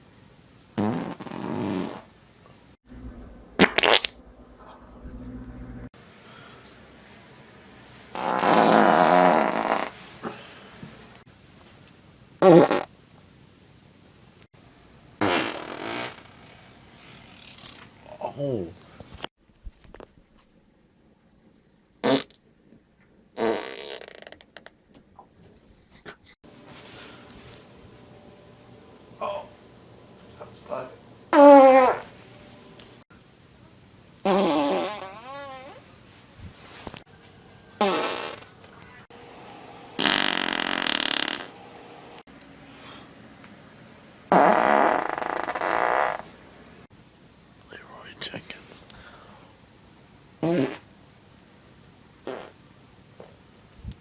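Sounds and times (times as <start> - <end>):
loud farts: 0.8 - 2.1, 3.6 - 4.2, 8.1 - 10.0, 12.4 - 12.9, 15.2 - 17.8, 22.0 - 22.4, 23.4 - 24.5, 31.4 - 32.1, 34.2 - 35.8, 37.8 - 38.5, 40.0 - 41.6, 44.3 - 46.3, 50.4 - 50.9, 52.2 - 52.6.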